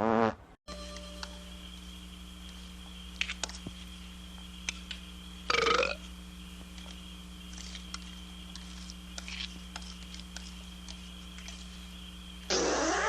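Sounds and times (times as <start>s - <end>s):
steady low hum: 0.4s - 13.0s
person burping: 5.5s - 6.0s.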